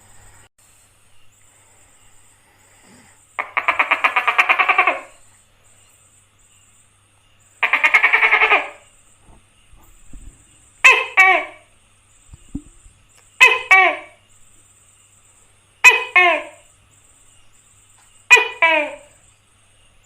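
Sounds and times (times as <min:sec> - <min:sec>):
gecko calling: 0:02.4 - 0:05.9, 0:06.5 - 0:15.1, 0:15.8 - 0:19.5.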